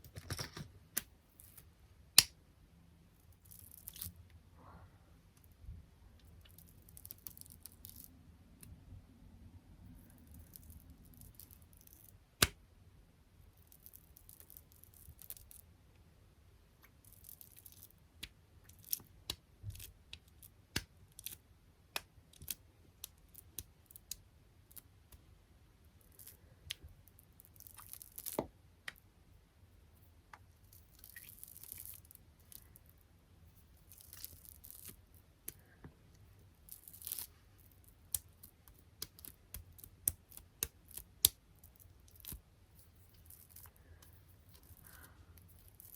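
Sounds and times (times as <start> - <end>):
tapping on small items: 0.0 - 1.1.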